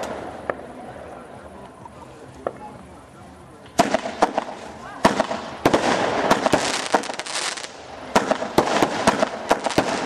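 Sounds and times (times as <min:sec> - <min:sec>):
firework crackling: 0:00.0 - 0:02.9, 0:03.5 - 0:10.0
firework bangs: 0:03.6 - 0:10.0.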